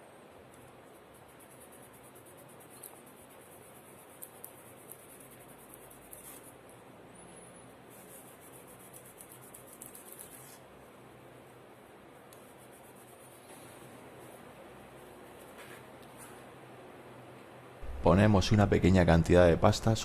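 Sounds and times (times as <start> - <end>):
faint scratching and rubbing: 0.6 - 6.6, 7.8 - 16.5.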